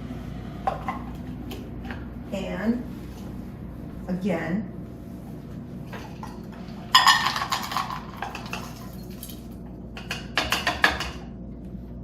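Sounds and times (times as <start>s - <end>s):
kitchen utensils and dishes clattering: 6.0s - 11.2s.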